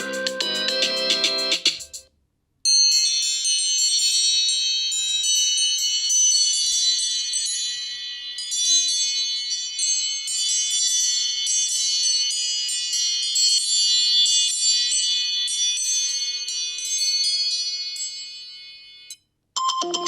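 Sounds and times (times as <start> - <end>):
phone ringtone chime notes: 0.0 - 1.7, 18.2 - 20.0.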